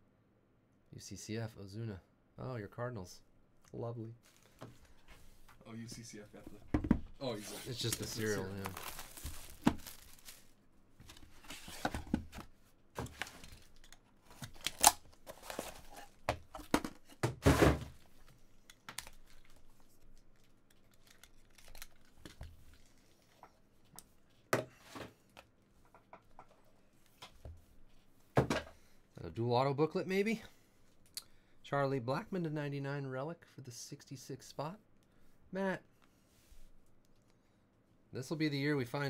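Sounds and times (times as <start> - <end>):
packaging tearing and crinkling: 7.7 - 10.5, 13.3 - 15.9.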